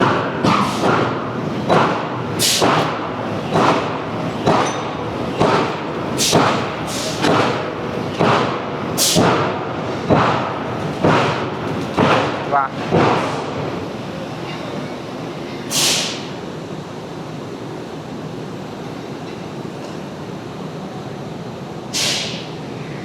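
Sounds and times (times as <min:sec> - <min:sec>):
machinery thudding: 0:00.0 - 0:13.5
air hiss bursts: 0:02.4 - 0:02.8, 0:06.2 - 0:07.3, 0:15.7 - 0:16.4, 0:21.9 - 0:22.5.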